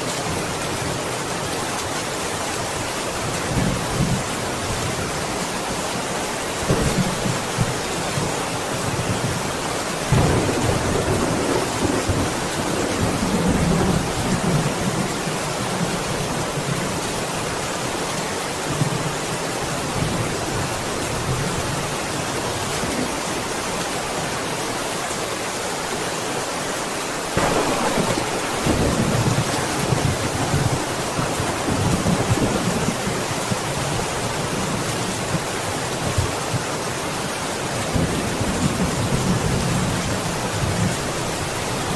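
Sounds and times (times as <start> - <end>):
steady rain falling: 0.0 - 41.9
thunder rumbling: 10.0 - 15.1, 27.4 - 34.6.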